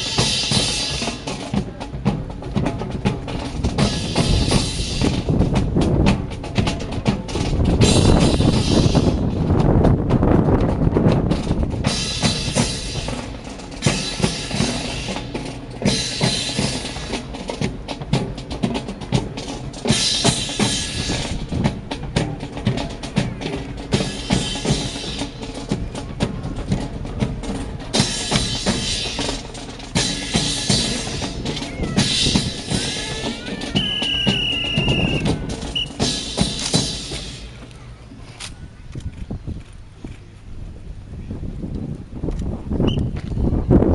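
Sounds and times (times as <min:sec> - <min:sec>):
marching snare and bass drums: 0:00.0 - 0:38.2
bursts of hiss: 0:07.9 - 0:09.2, 0:11.8 - 0:17.3, 0:19.8 - 0:21.6, 0:23.9 - 0:25.6, 0:27.9 - 0:37.7
high whistle-like tone: 0:33.8 - 0:36.2, 0:42.8 - 0:43.2.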